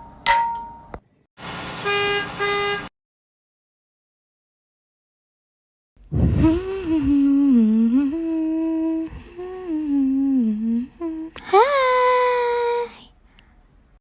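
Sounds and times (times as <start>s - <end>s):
person humming: 6.1s - 13.1s.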